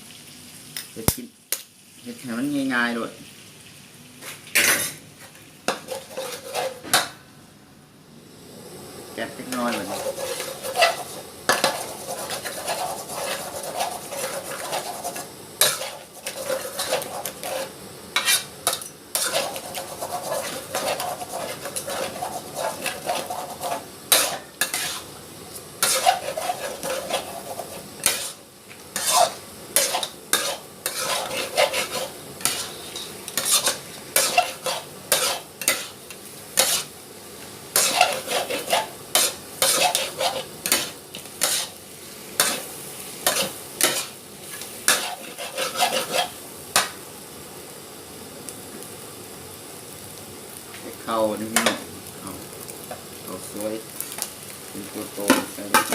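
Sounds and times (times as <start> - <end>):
eggs sizzling in oil: 0.0 - 55.9
spatula scraping a pan: 4.2 - 7.1, 9.4 - 25.1, 25.8 - 37.0, 37.7 - 41.8, 42.4 - 46.9.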